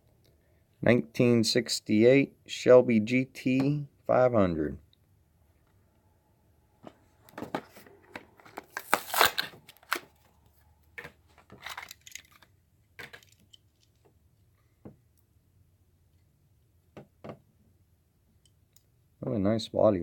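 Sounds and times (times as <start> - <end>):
packaging tearing and crinkling: 8.4 - 10.3, 11.5 - 12.5.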